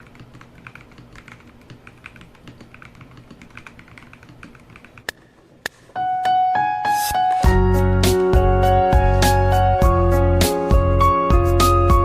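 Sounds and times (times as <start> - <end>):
mechanical keyboard typing: 0.0 - 5.1.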